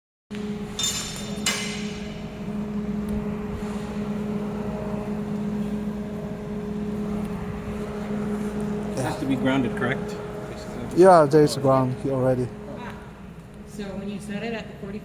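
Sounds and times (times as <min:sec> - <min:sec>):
low electrical machine hum: 0:00.3 - 0:15.0.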